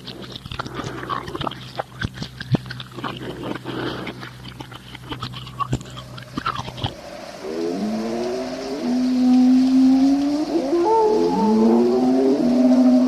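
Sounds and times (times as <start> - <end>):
creature grunting and snuffling: 0.0 - 7.0
wet clicks and crunches: 0.0 - 7.0.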